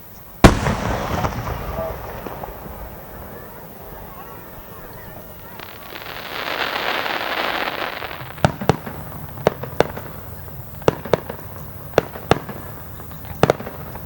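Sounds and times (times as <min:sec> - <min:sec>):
fireworks crackling hiss: 0:00.0 - 0:14.0
fireworks sharp bangs: 0:00.4 - 0:14.0.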